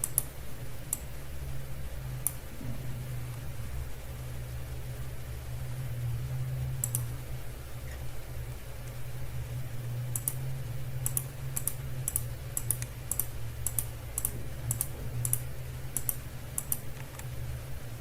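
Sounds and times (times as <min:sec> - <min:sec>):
computer mouse clicking: 0:00.0 - 0:01.1, 0:06.8 - 0:07.1, 0:10.1 - 0:10.4, 0:11.0 - 0:17.3
steady low hum: 0:00.0 - 0:18.0.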